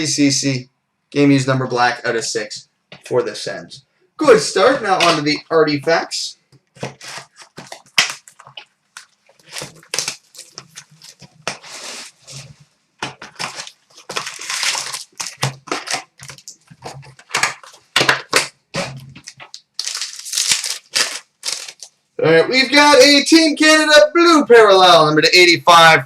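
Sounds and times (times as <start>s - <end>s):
plastic wrapper crinkling and ripping: 6.8s - 22.0s.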